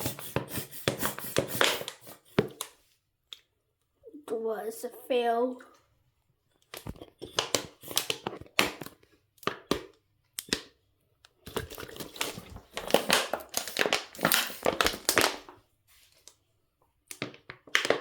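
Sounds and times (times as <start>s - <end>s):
plastic bottle crinkling: 0.0s - 2.8s, 6.6s - 9.9s, 11.4s - 16.4s, 17.1s - 18.0s.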